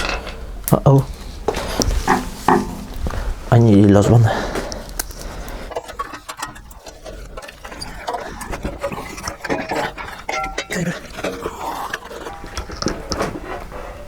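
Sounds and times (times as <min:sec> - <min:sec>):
metal clinks and knocks: 0:00.0 - 0:00.8, 0:01.5 - 0:03.4, 0:05.0 - 0:11.5.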